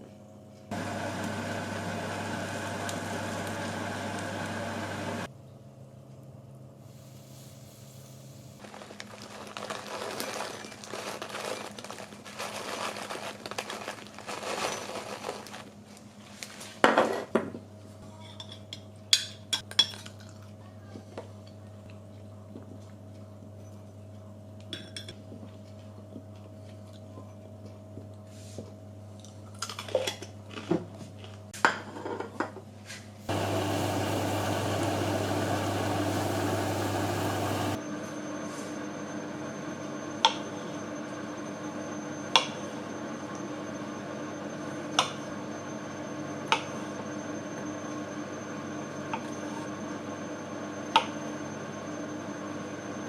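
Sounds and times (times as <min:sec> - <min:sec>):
appliance whirring hum: 0:00.0 - 0:07.2, 0:32.5 - 0:53.0.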